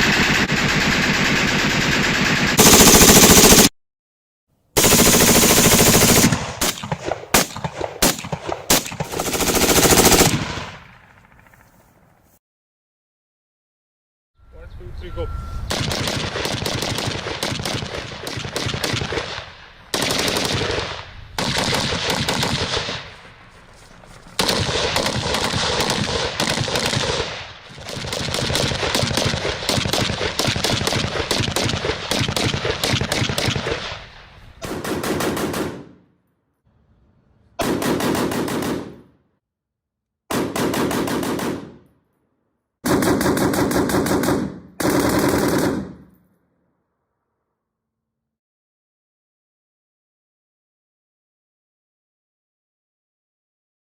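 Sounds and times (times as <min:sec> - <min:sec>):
automatic rifle bursts: 0:02.6 - 0:03.7, 0:04.8 - 0:10.6.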